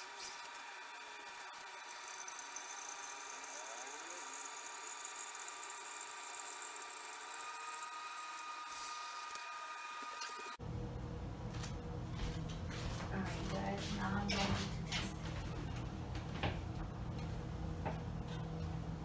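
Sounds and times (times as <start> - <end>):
coffee maker whining: 0.0 - 13.2.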